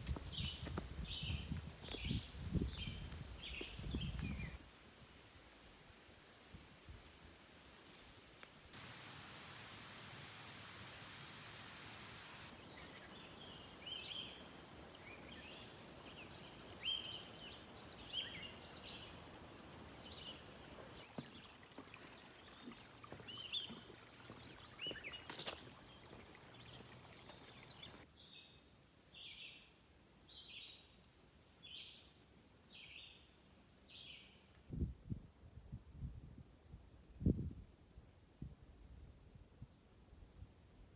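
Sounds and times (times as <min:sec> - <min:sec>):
steady background hiss: 0:04.5 - 0:21.1
songbirds chirping and singing: 0:15.2 - 0:28.5.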